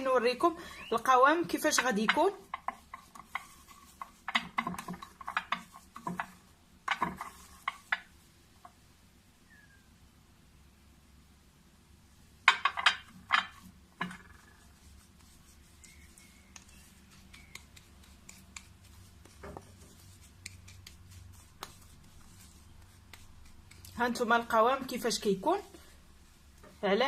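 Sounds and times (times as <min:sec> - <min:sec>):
spoon scraping paste in dish: 0:01.6 - 0:08.0, 0:13.4 - 0:24.0
spoon tapping and clicking: 0:17.3 - 0:18.7.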